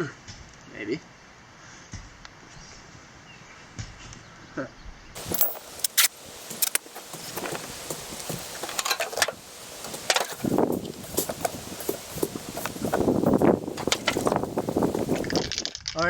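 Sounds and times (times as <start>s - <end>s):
rubbing sounds: 5.2s - 15.6s.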